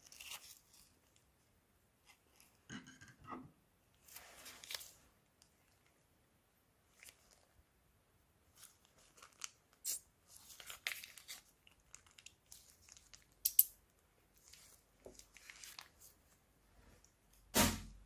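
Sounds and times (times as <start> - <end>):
plastic bags crinkling: 8.5 - 13.4.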